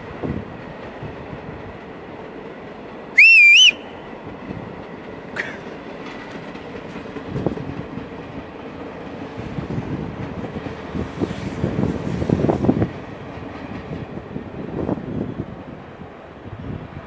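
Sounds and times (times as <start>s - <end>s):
train rolling rumble: 0.0s - 17.0s
high train whistle: 3.1s - 4.1s.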